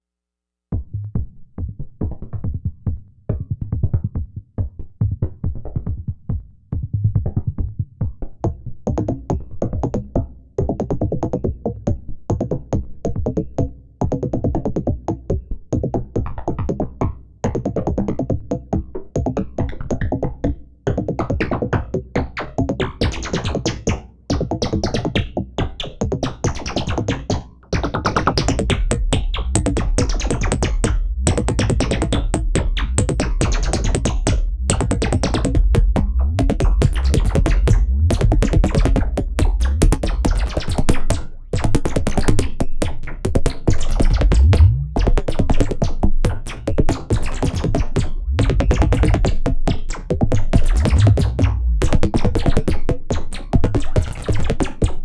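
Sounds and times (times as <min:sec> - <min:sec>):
pulsing synth bass: 0:27.8 - 0:55.0
high arpeggiated synth line: 0:28.8 - 0:41.2, 0:44.0 - 0:45.4, 0:47.4 - 0:52.3
upward pitch sweep: 0:34.3 - 0:40.6, 0:44.2 - 0:45.2, 0:48.1 - 0:49.6, 0:50.7 - 0:52.1.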